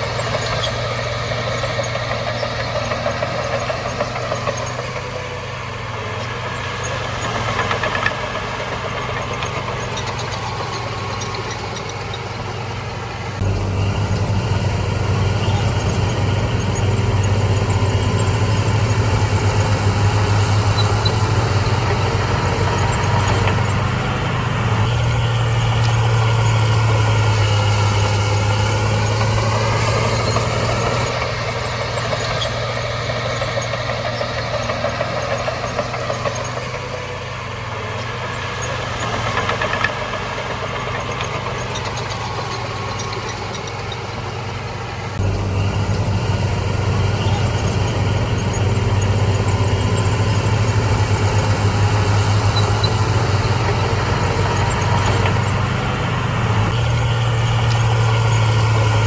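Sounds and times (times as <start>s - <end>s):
heavy machine diesel engine drone: 0.0s - 59.0s.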